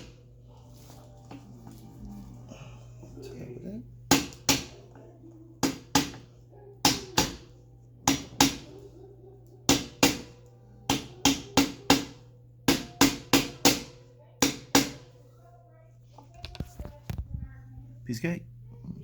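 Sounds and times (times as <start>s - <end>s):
hatchet hammering on wood: 4.1s - 4.8s, 5.6s - 8.8s, 9.7s - 15.2s.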